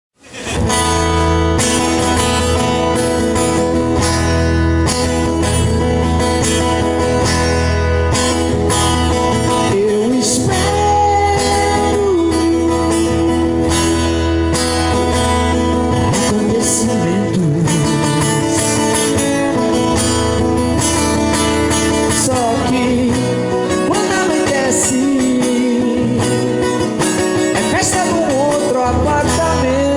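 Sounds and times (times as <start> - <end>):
acoustic guitar strummed: 0.2 - 29.9
person singing: 8.7 - 19.3, 21.3 - 29.9.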